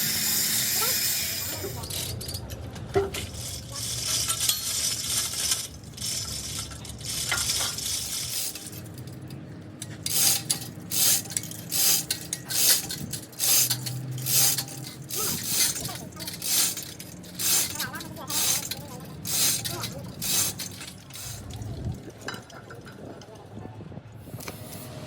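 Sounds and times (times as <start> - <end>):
metal clinking and scraping: 0.4 - 21.6
short hissing bursts: 20.2 - 21.4.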